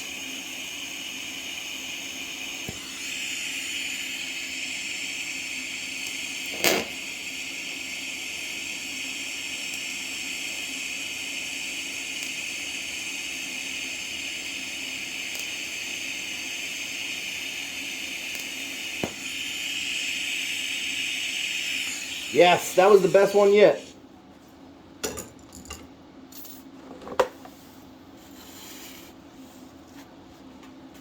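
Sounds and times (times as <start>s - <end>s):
welding arc buzzing hiss: 0.0s - 24.0s.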